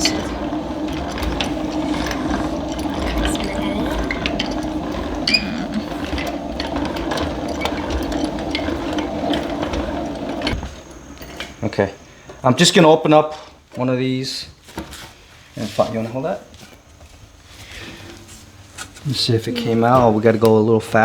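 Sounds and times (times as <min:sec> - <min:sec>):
rapid ratcheting clatter: 0:00.0 - 0:11.4
honey extractor whirring: 0:00.0 - 0:21.0.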